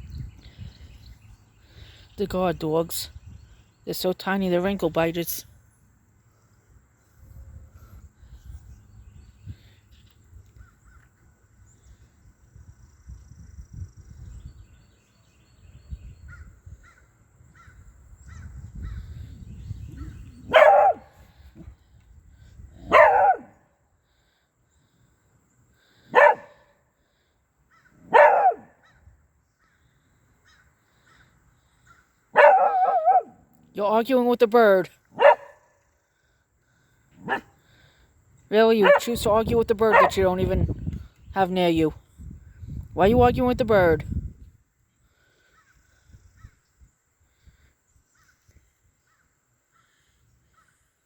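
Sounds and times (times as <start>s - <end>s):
small dog barking: 20.5s - 21.1s, 22.8s - 23.5s, 26.1s - 26.6s, 28.0s - 28.8s, 32.3s - 33.4s, 35.2s - 35.6s, 37.2s - 37.5s, 38.8s - 39.1s, 39.9s - 40.2s.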